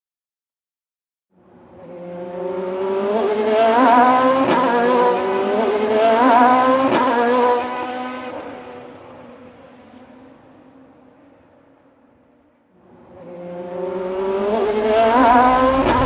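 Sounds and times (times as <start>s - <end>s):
racing car engine accelerating: 12.9s - 16.0s.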